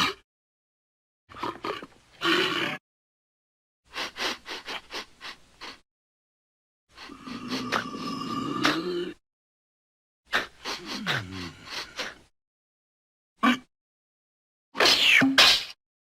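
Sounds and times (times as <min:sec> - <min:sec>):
cartoon alligator growling: 0:07.1 - 0:09.2.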